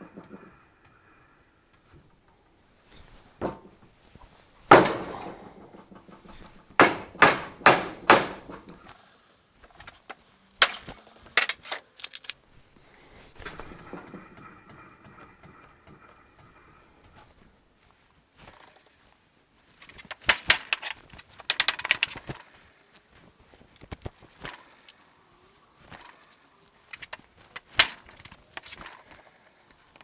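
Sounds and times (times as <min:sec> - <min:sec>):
hammer striking steel wheel: 0:06.8 - 0:08.6.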